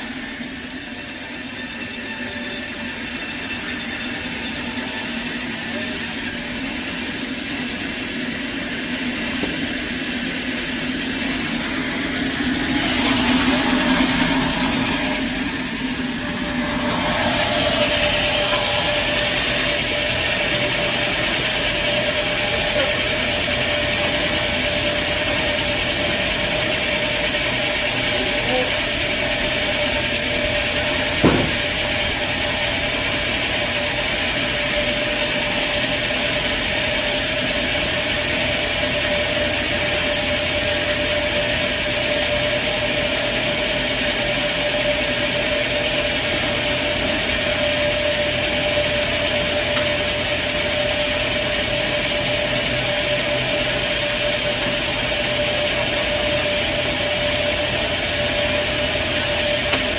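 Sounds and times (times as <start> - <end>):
sawmill machinery droning: 0.0 - 59.9
sharp knock: 31.2 - 31.7.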